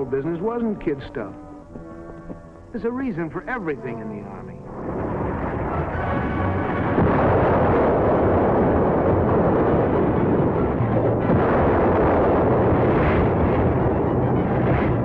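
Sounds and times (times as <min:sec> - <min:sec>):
battle explosions and rumbling: 0:04.6 - 0:15.0.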